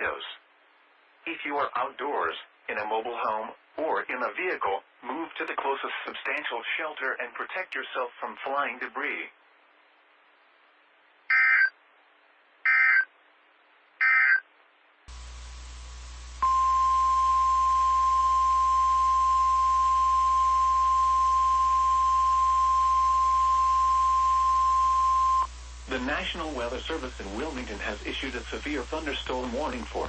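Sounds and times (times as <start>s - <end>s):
raspy data burst squawks: 11.3s - 11.7s, 12.7s - 13.1s, 14.0s - 14.4s
steady warning alarm tone: 16.4s - 25.6s.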